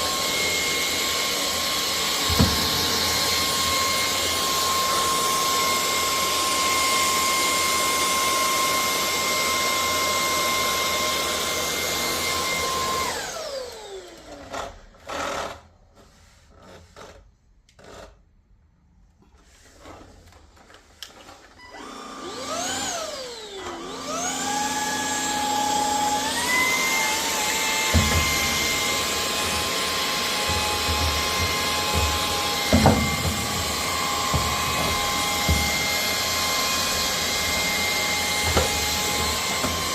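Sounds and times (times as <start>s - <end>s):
vacuum cleaner knocking: 0.0s - 13.3s, 23.8s - 39.9s
vacuum cleaner motor whining: 0.0s - 15.6s, 19.9s - 39.9s.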